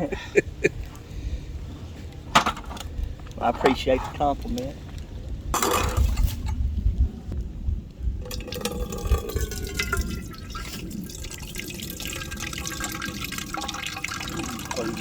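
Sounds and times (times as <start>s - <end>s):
liquid pouring into container: 8.2s - 15.0s.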